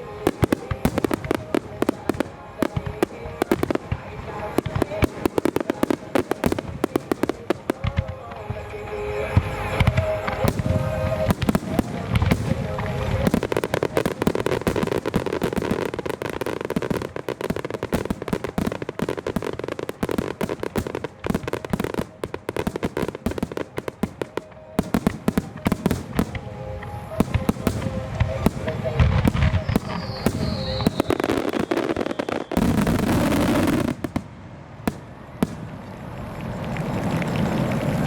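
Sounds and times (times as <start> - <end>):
music: 0.0 - 34.2
fireworks bursting and crackling: 0.0 - 38.0.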